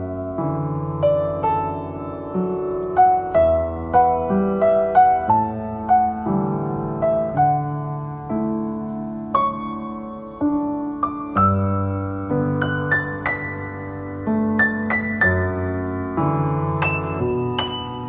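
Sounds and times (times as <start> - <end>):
gentle instrumental music: 0.0 - 18.0.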